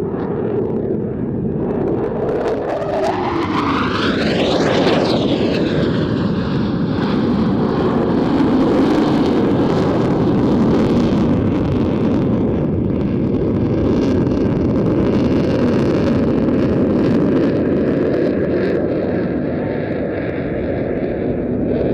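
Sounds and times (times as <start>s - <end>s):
jet aircraft flypast roar: 0.0s - 21.9s.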